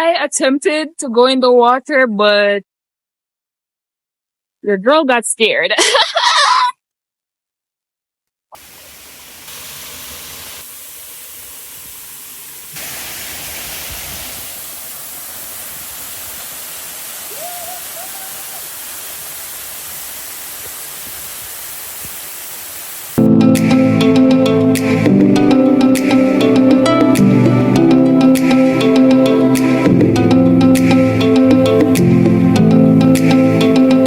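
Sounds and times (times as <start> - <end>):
waterfall roaring: 8.6 - 23.2.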